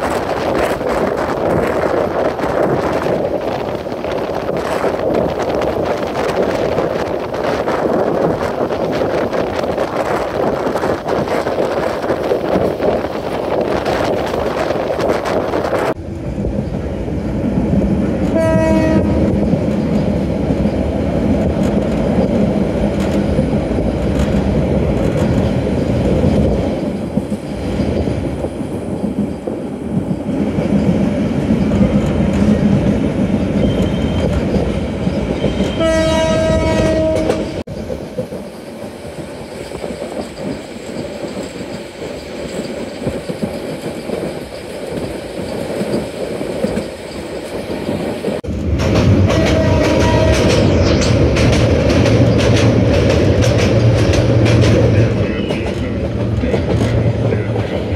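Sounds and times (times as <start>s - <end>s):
train rumbling on rails: 0.0s - 57.9s
train horn blasts: 18.3s - 19.4s, 35.5s - 37.6s, 49.3s - 50.6s.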